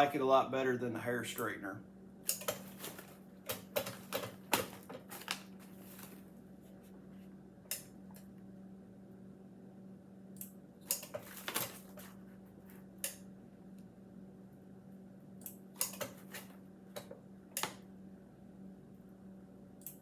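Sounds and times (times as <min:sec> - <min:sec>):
steady low hum: 0:00.0 - 0:20.0
plastic bags crinkling: 0:02.5 - 0:06.4.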